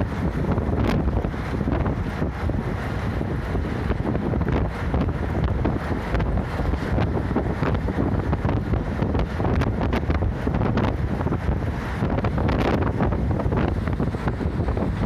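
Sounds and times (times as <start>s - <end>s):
bus road and engine rumble: 0.0s - 15.0s
wind noise: 0.0s - 15.0s.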